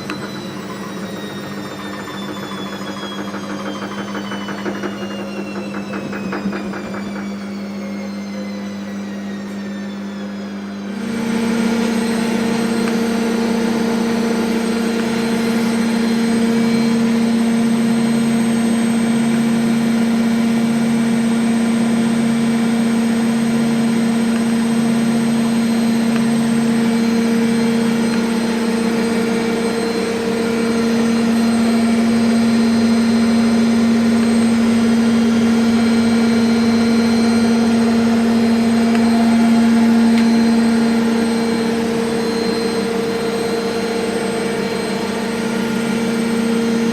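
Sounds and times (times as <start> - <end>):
washing machine spinning: 0.0 - 46.9.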